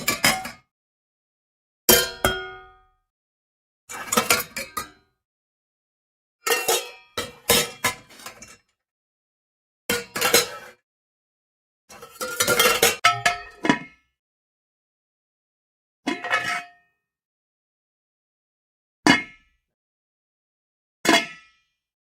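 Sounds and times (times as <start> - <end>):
metal pots and pans clanging: 0.0 - 0.6, 3.9 - 5.0, 6.5 - 8.6, 9.9 - 10.8, 11.9 - 13.9.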